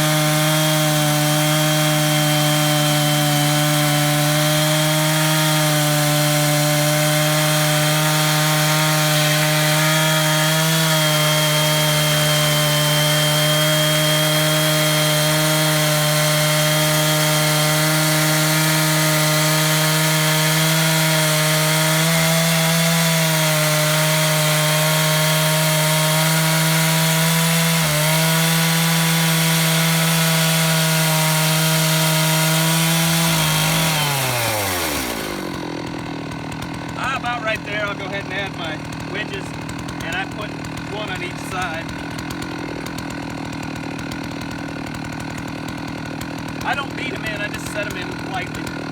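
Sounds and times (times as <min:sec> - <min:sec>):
chainsaw cutting a log: 0:00.0 - 0:48.9.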